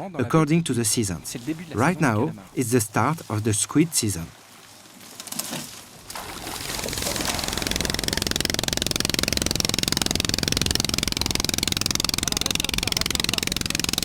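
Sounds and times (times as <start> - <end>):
small boat engine chugging: 6.0 - 14.0.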